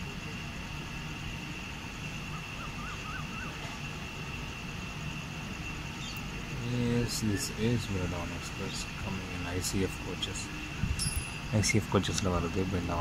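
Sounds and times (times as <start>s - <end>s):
high whine: 5.1s - 13.0s.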